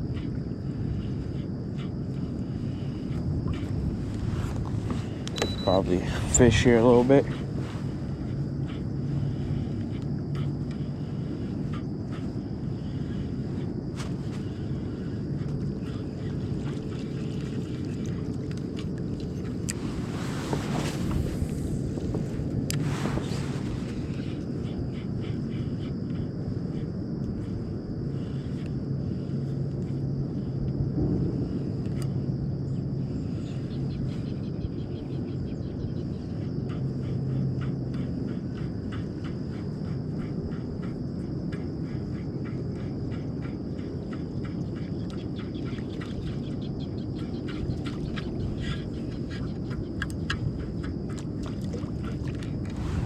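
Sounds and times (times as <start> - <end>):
steady low rumble: 0.0 - 53.0
faint high-pitched tone: 5.4 - 6.5.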